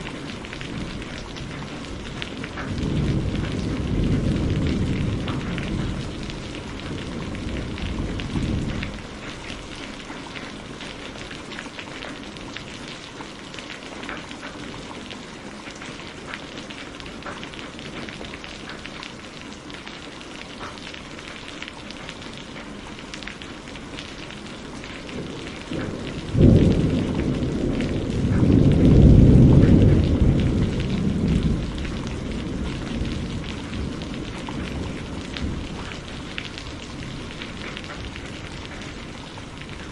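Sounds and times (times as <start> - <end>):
thunder rumbling: 0.0 - 11.3, 24.1 - 39.9
heavy rain pouring: 0.0 - 39.9
sharp thunderclap: 0.7 - 9.0, 25.2 - 36.4.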